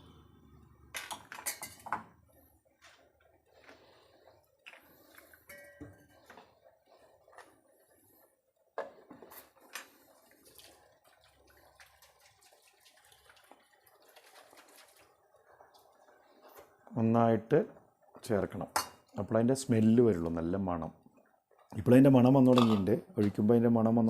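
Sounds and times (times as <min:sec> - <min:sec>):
spoon clinking against cookware: 0:05.4 - 0:06.2.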